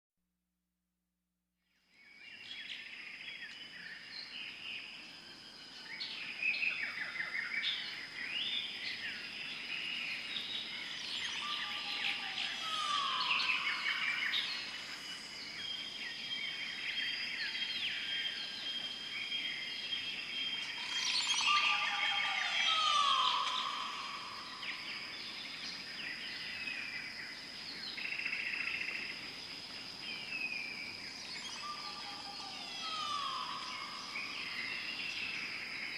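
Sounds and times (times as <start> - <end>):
high insect drone: 2.5 - 35.9
birds chirping and whistling: 10.4 - 14.8, 15.7 - 26.6, 31.2 - 35.4.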